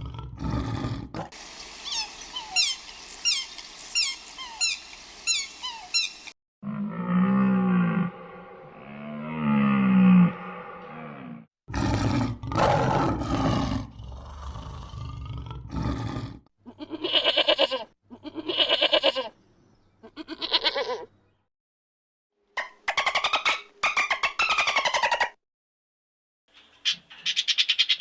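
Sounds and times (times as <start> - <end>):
animal pulsing calls: 1.4 - 6.3
animal roar-like call: 6.6 - 16.4.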